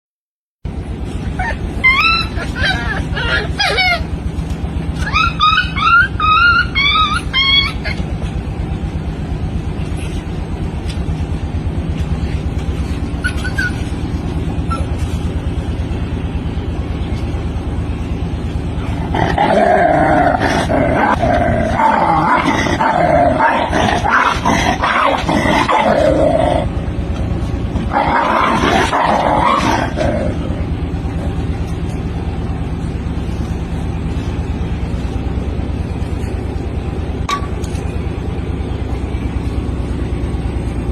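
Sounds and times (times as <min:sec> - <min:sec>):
low hum: 0:00.6 - 0:40.9
dog growling and barking: 0:01.4 - 0:04.1, 0:18.8 - 0:26.8, 0:27.7 - 0:30.7
monkey shrieking chatter: 0:01.4 - 0:04.1, 0:05.0 - 0:08.0, 0:13.2 - 0:14.0.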